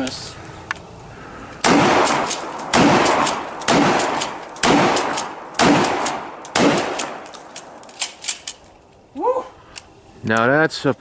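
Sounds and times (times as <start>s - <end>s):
loud gunshots with ringing echo: 1.6s - 7.8s.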